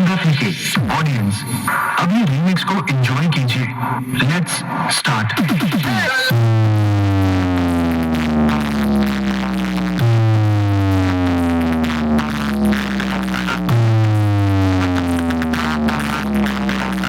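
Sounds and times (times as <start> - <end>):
electronic dance music: 0.0 - 17.0
synthesizer bass sliding down: 5.6 - 17.0.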